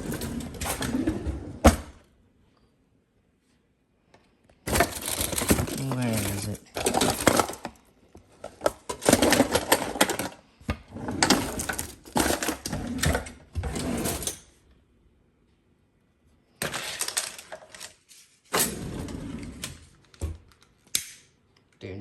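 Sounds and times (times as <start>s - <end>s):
plastic pieces clattering: 4.7s - 7.8s, 8.4s - 10.4s, 11.2s - 12.7s, 16.6s - 18.2s.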